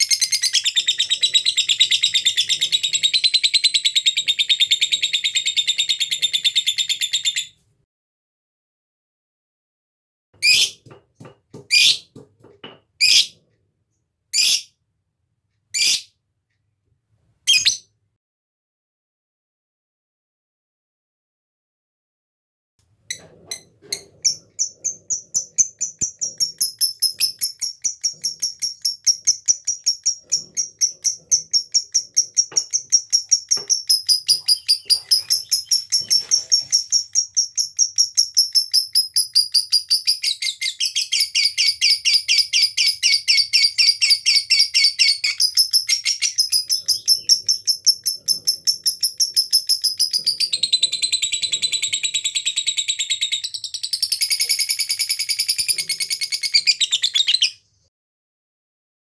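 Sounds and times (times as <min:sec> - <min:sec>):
lovebird shrill trilling: 0:10.4 - 0:10.8, 0:13.0 - 0:13.3, 0:14.4 - 0:14.7, 0:15.8 - 0:16.1, 0:17.5 - 0:17.8.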